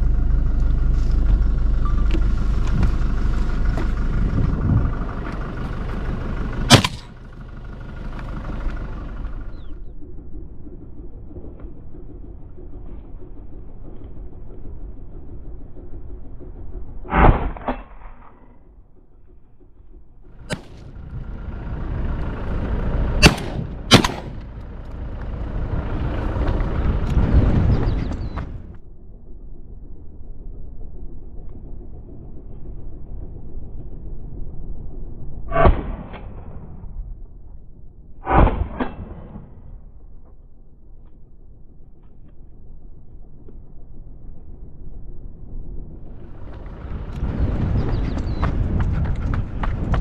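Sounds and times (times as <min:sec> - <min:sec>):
rumbling noise: 0:00.0 - 0:50.0
loud bang: 0:06.7 - 0:07.2, 0:38.2 - 0:39.8
shotgun gunshots: 0:06.7 - 0:07.2, 0:20.5 - 0:20.8, 0:23.2 - 0:24.5.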